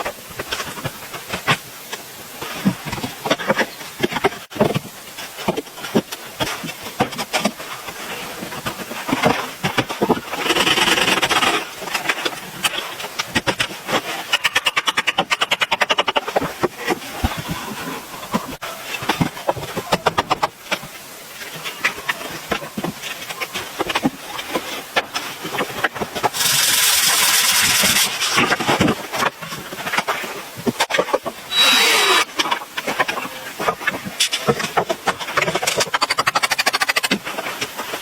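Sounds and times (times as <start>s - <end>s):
loud noisy burst: 26.4s - 28.1s, 31.5s - 32.4s.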